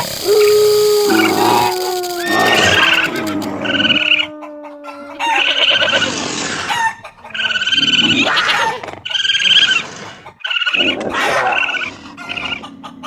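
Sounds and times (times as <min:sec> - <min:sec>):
domestic fowl calling: 0:00.0 - 0:09.5.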